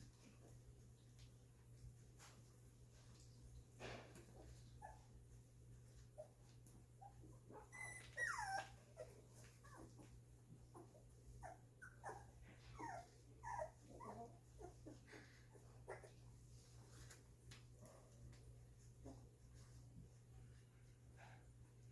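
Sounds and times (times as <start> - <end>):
puppies whimpering and squeaking: 7.0 - 16.2.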